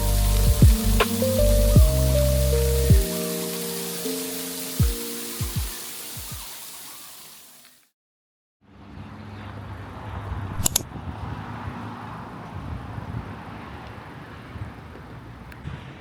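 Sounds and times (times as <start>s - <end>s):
background hiss: 0.0s - 7.9s.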